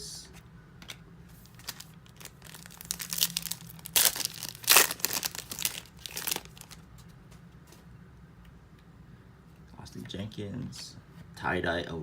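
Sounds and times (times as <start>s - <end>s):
foil wrapper crinkling and tearing: 1.4s - 6.9s.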